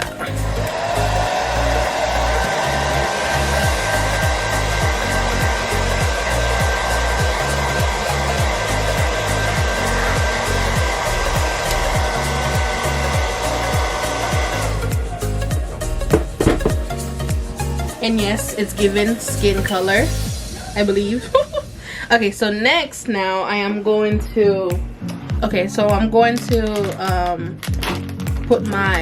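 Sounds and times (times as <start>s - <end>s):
background music with beat: 0.0s - 21.9s, 24.1s - 29.0s
hair dryer blowing: 0.0s - 22.1s.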